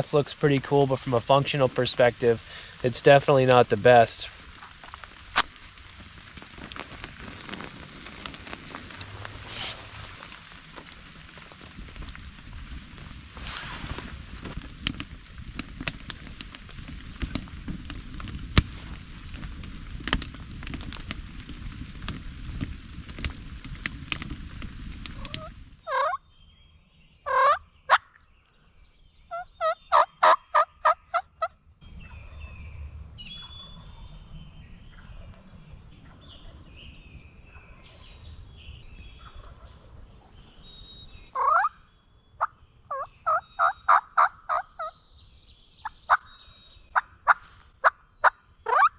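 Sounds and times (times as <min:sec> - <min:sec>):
pattering noise with sharp ticks: 0:00.4 - 0:13.3, 0:14.3 - 0:25.6
wild turkey calling: 0:25.3 - 0:26.2, 0:27.3 - 0:28.1, 0:29.3 - 0:32.2, 0:41.4 - 0:45.0, 0:45.8 - 0:48.9
small birds chirping: 0:31.8 - 0:47.5.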